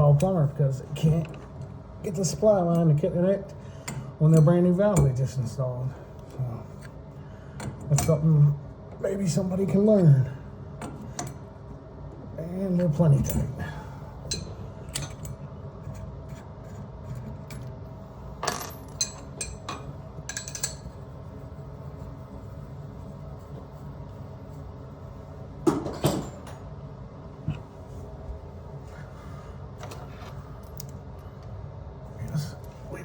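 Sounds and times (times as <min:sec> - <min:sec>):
low steady hum: 0:00.0 - 0:33.0
metal tools clinking: 0:18.4 - 0:20.9.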